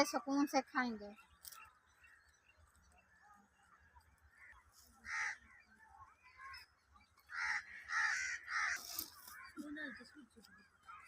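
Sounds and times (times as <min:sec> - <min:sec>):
faint bird calls: 0:01.1 - 0:11.0
crow cawing: 0:04.3 - 0:11.0.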